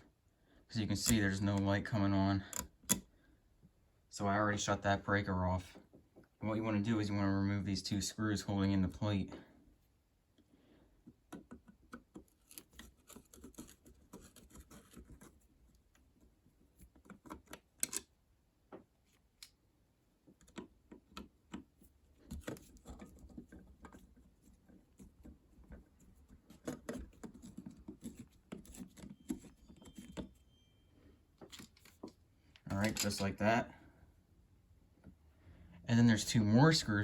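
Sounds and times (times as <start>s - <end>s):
screwdriver clicking and scraping: 0.9s - 1.8s, 2.5s - 3.1s, 11.3s - 16.0s, 16.8s - 18.1s, 20.3s - 30.4s.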